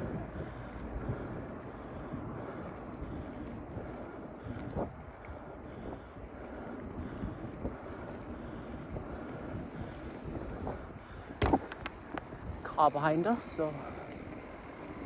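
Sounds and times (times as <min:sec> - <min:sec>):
faint bicycle clicks: 0:00.0 - 0:10.3, 0:11.0 - 0:12.6
wind buffeting microphone: 0:00.0 - 0:15.0.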